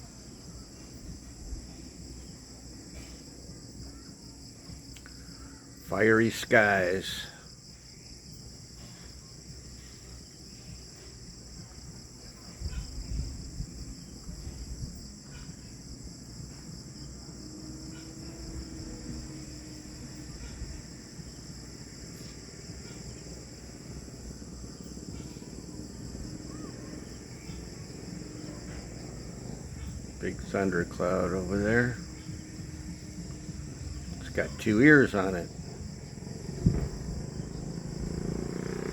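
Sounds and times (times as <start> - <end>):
insects trilling: 0.0 - 38.9
low rumble: 35.4 - 38.2.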